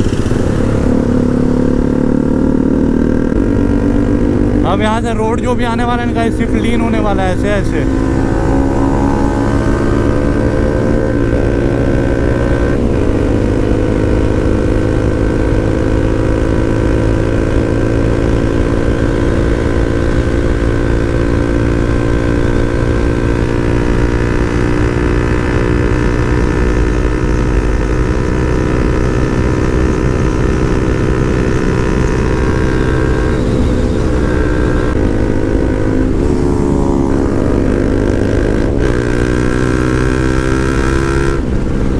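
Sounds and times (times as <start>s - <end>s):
motorcycle engine cruising: 0.0s - 41.9s
wind rumble: 0.0s - 41.9s.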